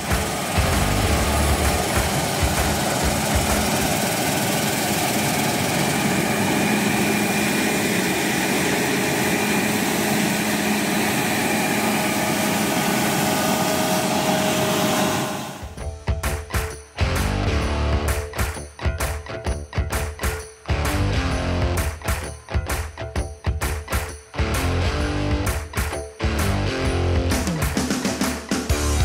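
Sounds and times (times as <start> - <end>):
combine harvester running: 0.0 - 15.8.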